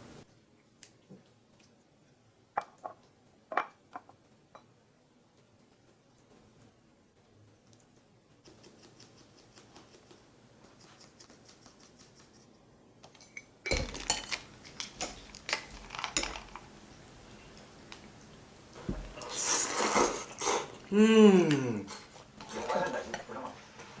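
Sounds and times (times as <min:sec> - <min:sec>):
dishes and cutlery clinking: 0:13.1 - 0:16.6.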